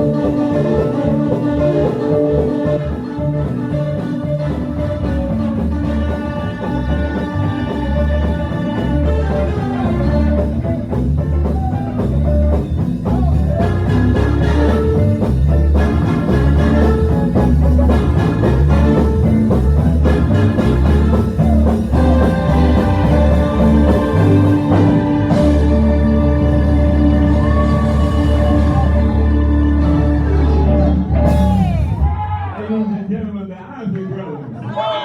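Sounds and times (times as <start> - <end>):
pulsing bass line: 0.0 - 32.3
band playing instrumental music: 0.0 - 32.5
guitar: 0.0 - 33.1.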